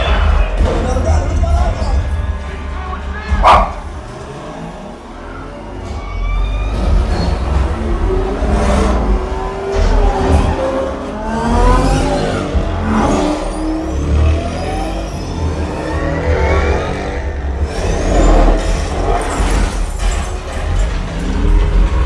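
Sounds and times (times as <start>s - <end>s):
heavy bass rumble: 0.0s - 6.0s
car engines revving and speeding past: 0.0s - 22.0s.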